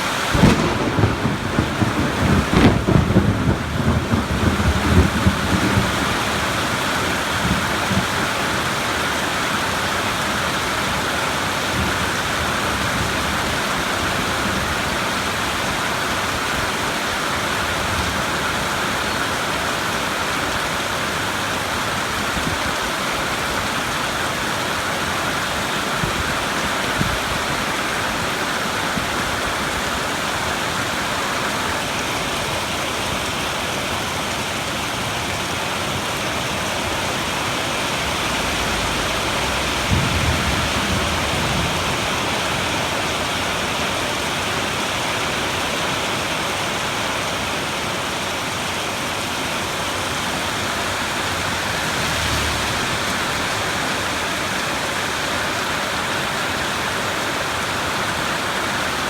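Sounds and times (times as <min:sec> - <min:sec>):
heavy rain falling: 0:00.0 - 0:59.0
low rumble of thunder: 0:00.2 - 0:09.2, 0:37.2 - 0:43.8, 0:50.8 - 0:55.1.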